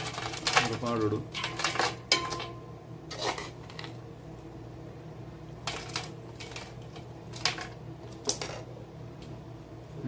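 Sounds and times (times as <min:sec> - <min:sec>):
metal spoon clinking on pot: 0:00.0 - 0:02.6
steady low hum: 0:00.0 - 0:10.0.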